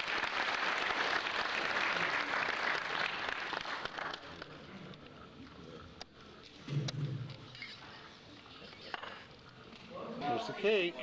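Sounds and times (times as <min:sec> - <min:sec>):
congregation applauding: 0:00.0 - 0:04.5.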